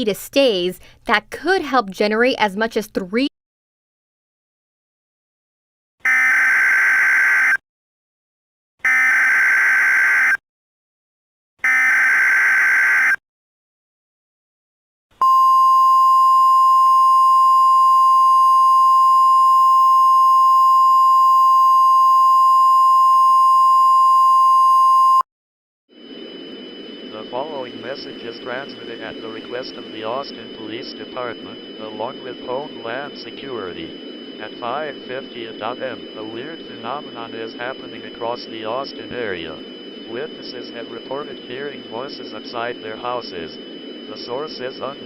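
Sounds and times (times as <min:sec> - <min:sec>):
steady attention tone: 0:26.0 - 0:45.0.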